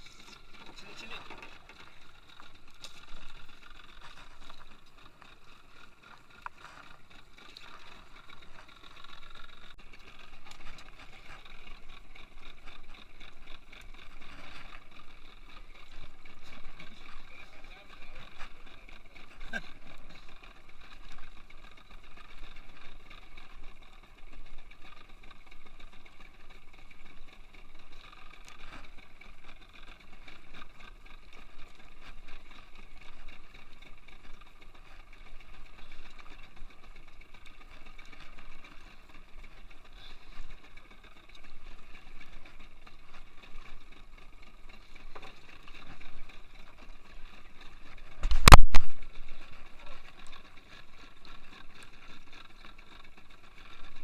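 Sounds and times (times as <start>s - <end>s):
boat engine running: 0.0s - 54.0s.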